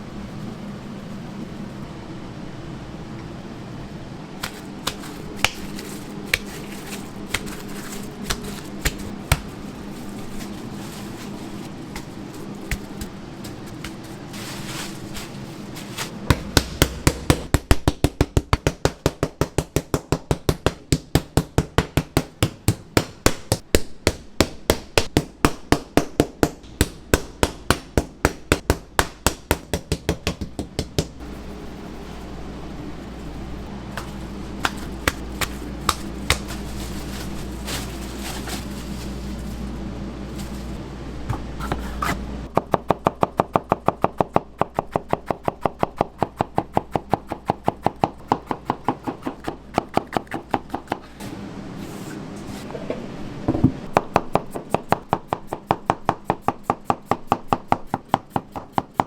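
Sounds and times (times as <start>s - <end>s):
meat pounding on a board: 4.4s - 9.5s, 16.2s - 31.2s, 34.0s - 36.6s.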